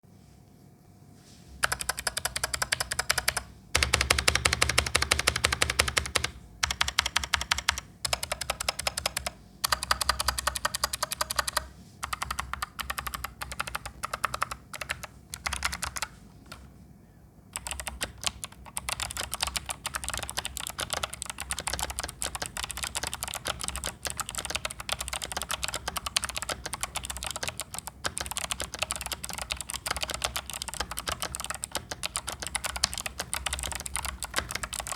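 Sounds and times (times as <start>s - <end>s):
mechanical keyboard typing: 1.6s - 16.7s, 17.5s - 34.9s.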